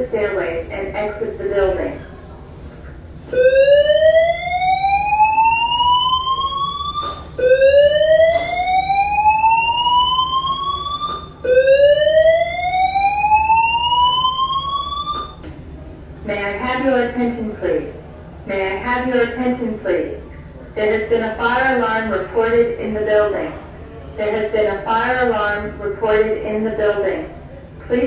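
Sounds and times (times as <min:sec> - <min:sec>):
fire alarm slow-whoop tone: 0:03.3 - 0:15.4.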